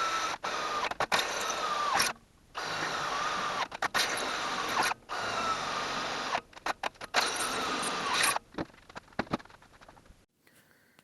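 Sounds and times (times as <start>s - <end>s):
power drill boring steel: 0.0s - 6.4s, 7.1s - 8.4s.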